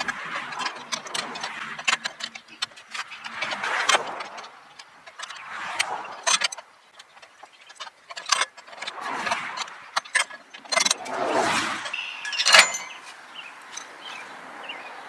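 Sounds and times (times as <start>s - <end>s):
metal bolt clicking and rattling: 12.2s - 13.9s.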